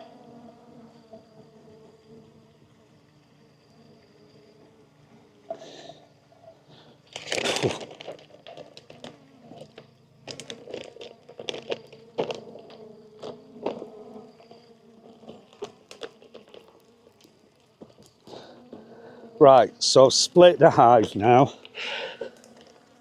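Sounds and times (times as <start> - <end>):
bees humming: 0.0 - 23.0
hive boxes clicking and knocking: 7.0 - 23.0.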